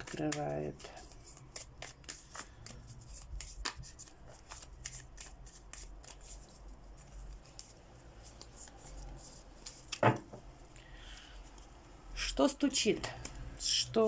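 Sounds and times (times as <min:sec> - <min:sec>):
playing cards shuffled: 0:00.0 - 0:10.3.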